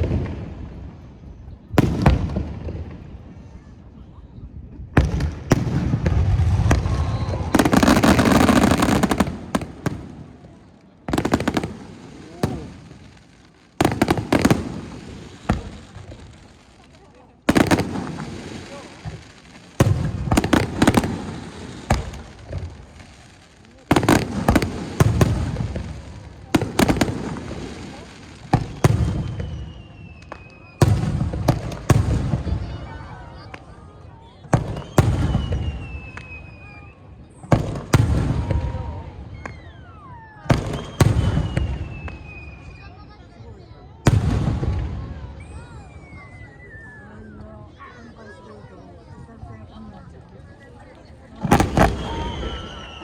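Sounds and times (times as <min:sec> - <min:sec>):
single firework bangs: 0:01.8 - 0:03.0, 0:05.0 - 0:10.4, 0:11.1 - 0:16.6, 0:17.5 - 0:32.9, 0:51.4 - 0:53.0.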